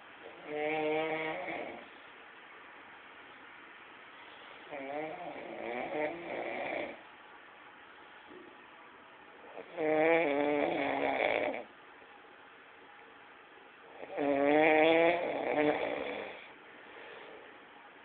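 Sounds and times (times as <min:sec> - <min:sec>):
man snoring: 0:00.4 - 0:01.9, 0:04.7 - 0:07.0, 0:09.6 - 0:11.7, 0:14.0 - 0:16.5
quiet breathing: 0:03.9 - 0:07.1, 0:15.2 - 0:17.9.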